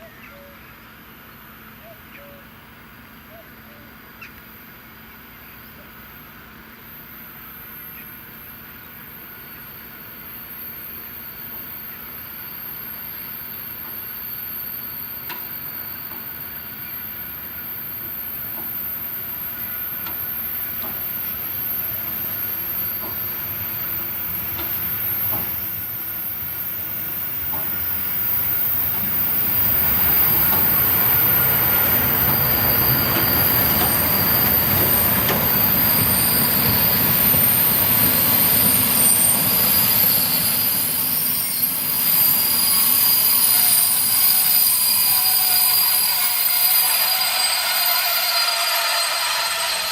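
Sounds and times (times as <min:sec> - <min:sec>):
braking wheels squealing: 0:09.3 - 0:49.9
train rumble: 0:15.2 - 0:49.9.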